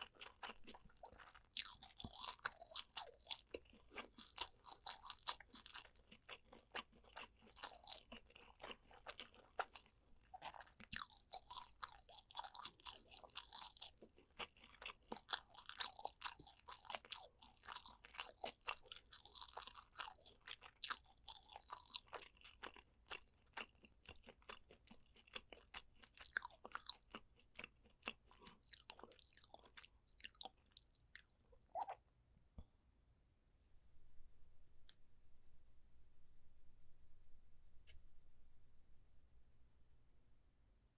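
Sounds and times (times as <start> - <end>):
chewing and biting: 0.0 - 32.0.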